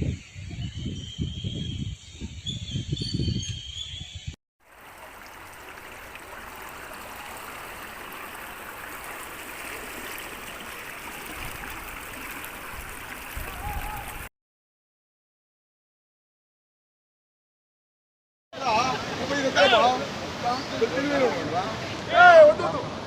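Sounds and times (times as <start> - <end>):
rush of floodwater: 4.6 - 14.3, 18.6 - 23.0.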